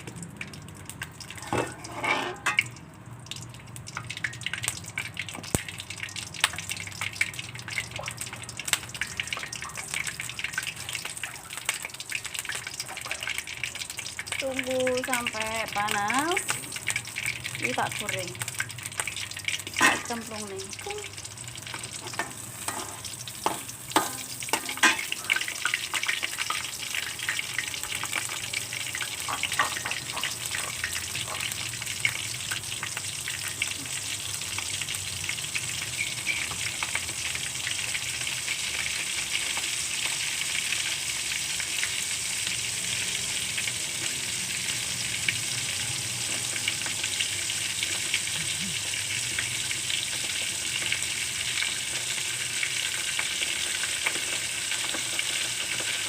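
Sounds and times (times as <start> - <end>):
food sizzling in oil: 0.0 - 56.0
food dropping into oil: 0.1 - 10.0, 18.5 - 20.4, 21.7 - 26.6.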